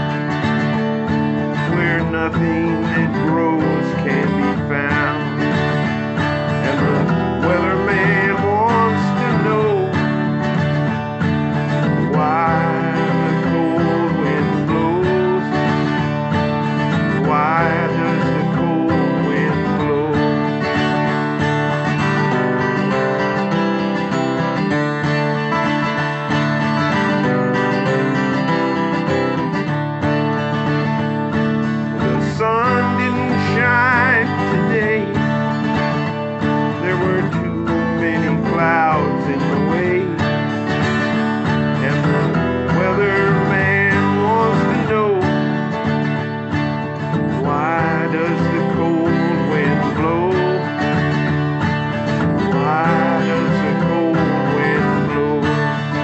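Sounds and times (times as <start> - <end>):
country music with acoustic guitar: 0.0 - 56.0.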